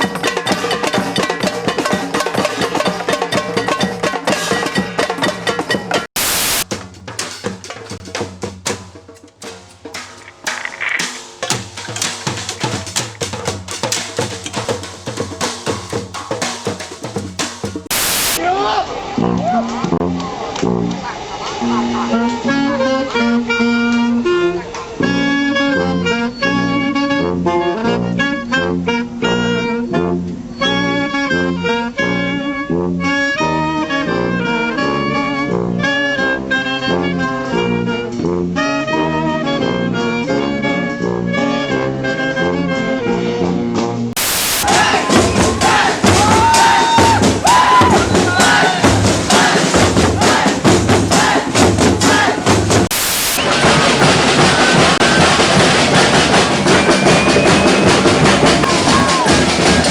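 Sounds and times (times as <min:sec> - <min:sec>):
horn band playing lively tune: 0:00.0 - 0:18.4, 0:19.2 - 0:30.2, 0:31.0 - 0:59.9
drumming: 0:00.0 - 0:18.5, 0:44.2 - 0:59.9
hissing static: 0:06.2 - 0:06.6, 0:09.9 - 0:12.6, 0:17.8 - 0:18.4, 0:44.2 - 0:44.7, 0:52.9 - 0:54.2
crowd shouting: 0:44.5 - 0:59.9.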